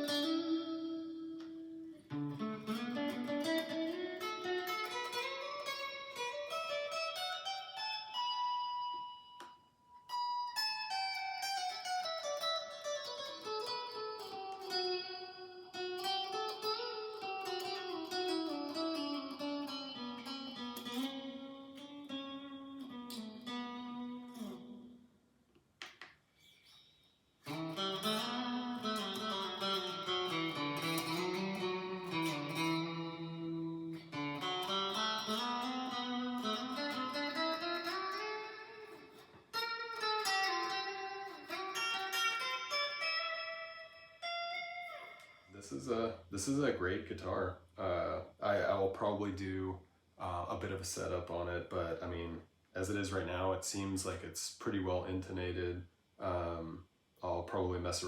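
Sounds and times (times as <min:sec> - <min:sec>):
electric guitar single-note runs: 0:27.5 - 0:39.2.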